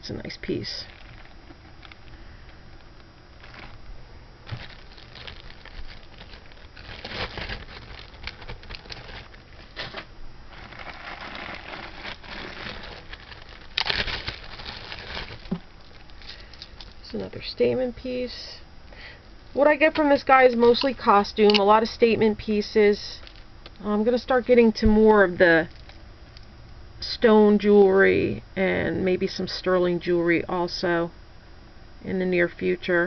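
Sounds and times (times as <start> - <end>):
plastic bags crinkling: 0.8 - 17.2, 22.5 - 23.8.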